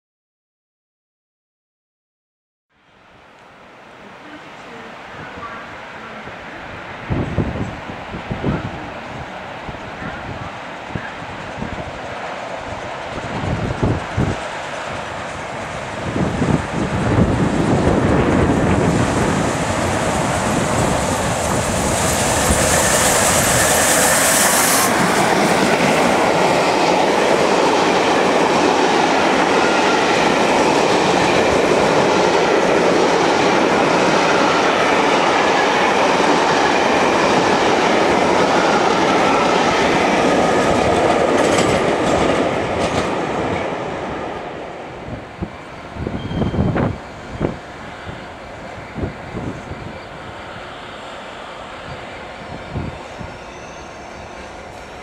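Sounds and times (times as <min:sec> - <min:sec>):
train wheels clattering over rails: 0:10.8 - 0:43.9
high hiss: 0:19.0 - 0:25.6.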